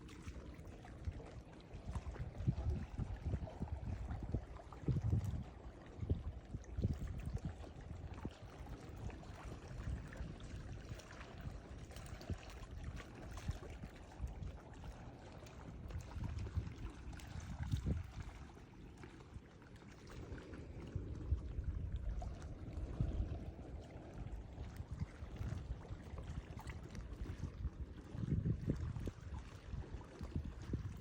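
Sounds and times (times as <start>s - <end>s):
ocean water rushing and splashing: 8.5s - 28.1s.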